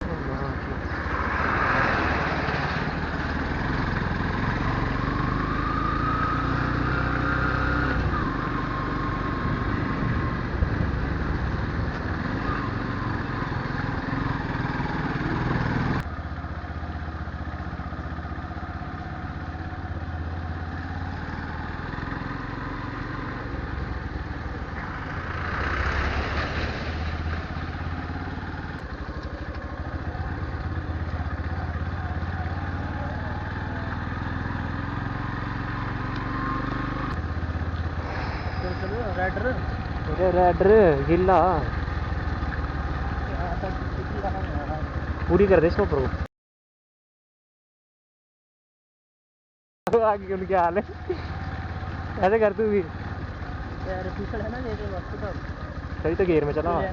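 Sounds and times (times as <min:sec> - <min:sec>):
motorcycle engine running: 0:02.6 - 0:26.3, 0:27.2 - 0:46.3, 0:49.9 - 0:56.9.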